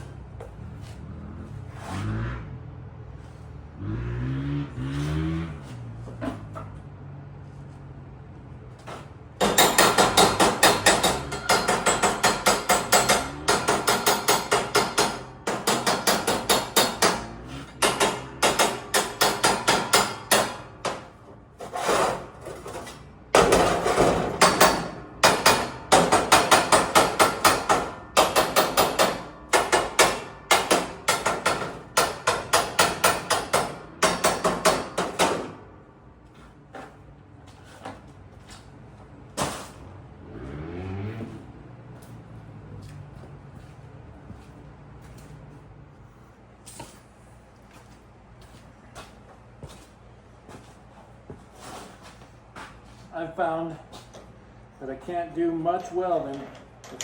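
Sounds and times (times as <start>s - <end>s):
rapid hammer strikes on metal: 9.4s - 21.2s, 23.3s - 35.6s.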